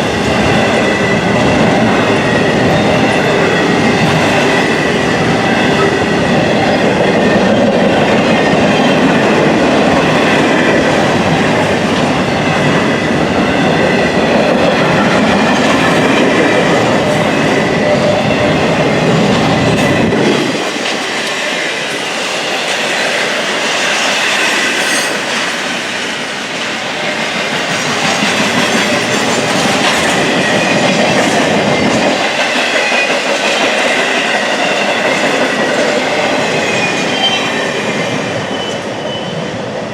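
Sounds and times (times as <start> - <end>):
deep train rumble: 0.0 - 39.9
train wheels clacking on rails: 0.0 - 39.9
high wheel squeal: 36.0 - 39.6.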